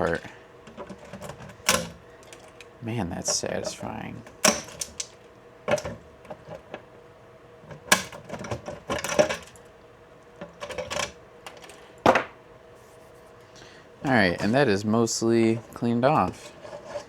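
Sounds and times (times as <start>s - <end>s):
plastic clicking and snapping: 0.7s - 2.7s, 3.6s - 6.8s, 7.7s - 9.6s.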